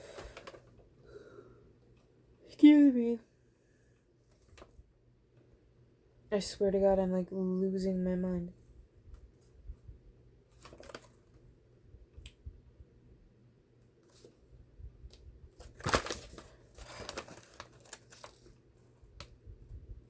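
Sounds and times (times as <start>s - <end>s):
packaging crinkling and rustling: 0.0s - 0.9s, 10.5s - 11.4s, 15.1s - 19.4s.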